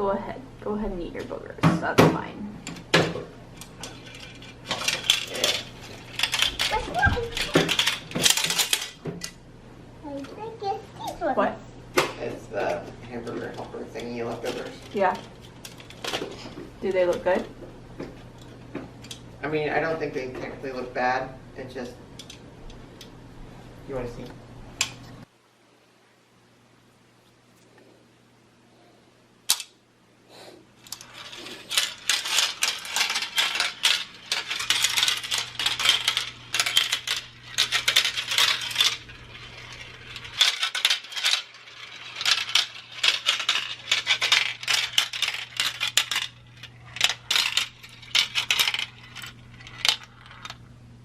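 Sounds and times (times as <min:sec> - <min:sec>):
marbles clattering down plastic run: 0:03.8 - 0:09.0, 0:30.9 - 0:50.6.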